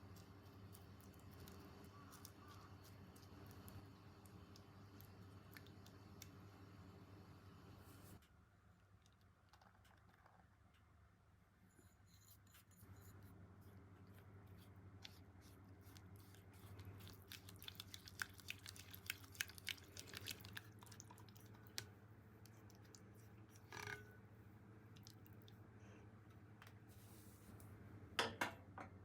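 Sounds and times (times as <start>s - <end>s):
low steady hum: 0.0s - 29.0s
kitchen clicks and taps: 28.2s - 29.0s.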